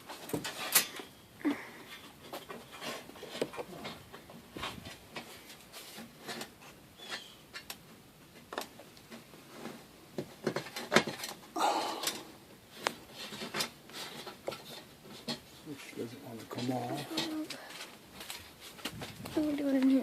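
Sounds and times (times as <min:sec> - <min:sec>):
hardware clicks and knocks: 0:01.9 - 0:15.5.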